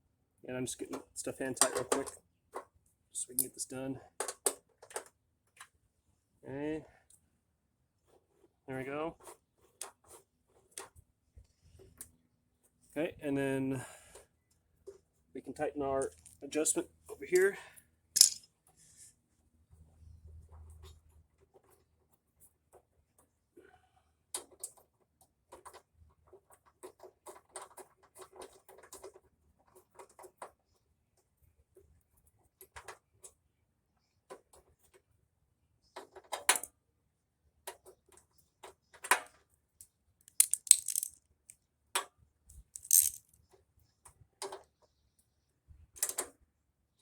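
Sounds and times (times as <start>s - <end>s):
metal clicks and clinks of tool: 18.2s - 18.5s, 40.3s - 41.2s, 42.8s - 43.3s
quick rattling: 40.4s - 41.2s, 42.8s - 43.3s.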